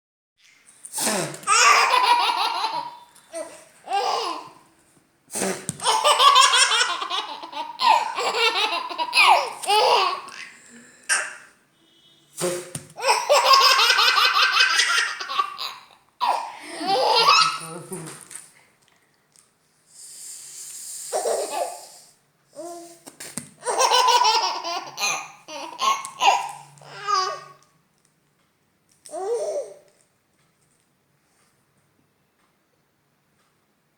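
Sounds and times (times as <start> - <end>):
breathy hiss: 0.5 - 1.6, 5.3 - 5.8, 10.3 - 12.8, 19.8 - 23.1
baby laughing: 1.4 - 4.6, 5.5 - 11.5, 13.0 - 17.9, 21.2 - 21.8, 23.6 - 27.6
brief sharp noise: 11.8 - 12.8.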